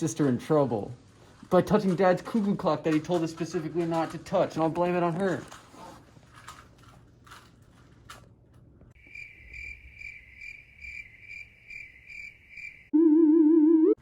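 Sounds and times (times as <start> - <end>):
crickets chirping: 9.0 - 13.0
wavering electronic tone: 12.9 - 14.0.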